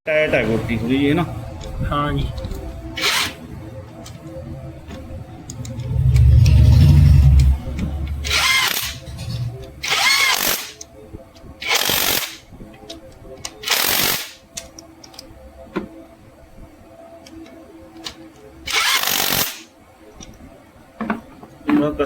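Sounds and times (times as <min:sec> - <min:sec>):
power tool running: 0:03.0 - 0:03.4, 0:05.6 - 0:10.8.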